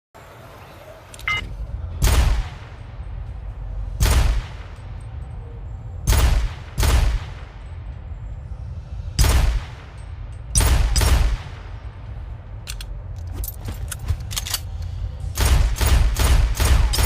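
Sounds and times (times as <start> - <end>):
pistol shots echoing: 15.4 - 17.0.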